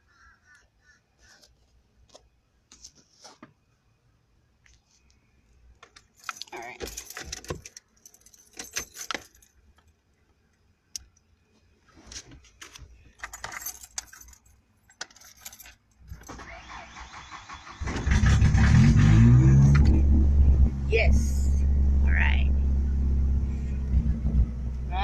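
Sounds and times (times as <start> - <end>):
keys jangling: 6.0 - 9.6, 13.2 - 16.3
truck engine revving: 16.6 - 25.0.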